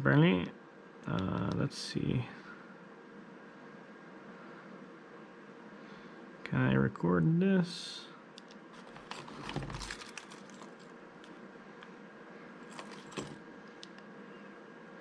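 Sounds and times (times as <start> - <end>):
keys jangling: 9.7 - 10.9, 12.7 - 13.4.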